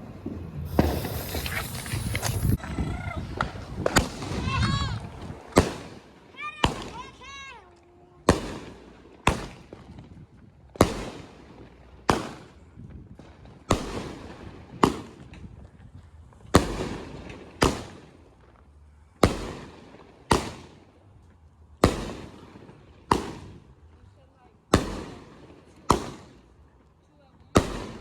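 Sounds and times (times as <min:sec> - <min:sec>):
fireworks bangs: 0:00.0 - 0:07.4, 0:27.6 - 0:28.0.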